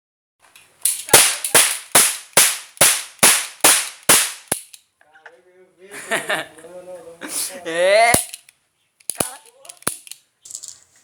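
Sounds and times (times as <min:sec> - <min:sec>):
toy cap revolver firing: 0:00.8 - 0:04.8, 0:08.1 - 0:10.2.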